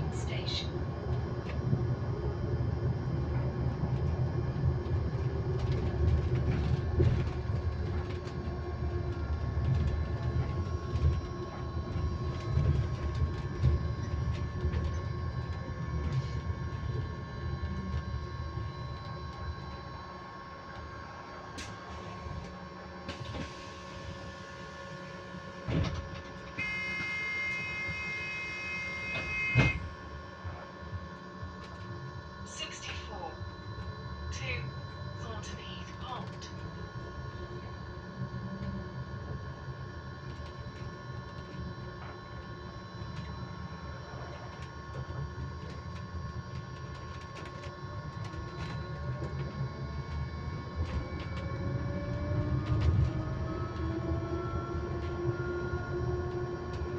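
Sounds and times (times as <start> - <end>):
bus rumble: 0.0 - 28.2, 28.8 - 56.9
electronic tones: 26.6 - 29.9
electric motor whine: 47.6 - 56.9.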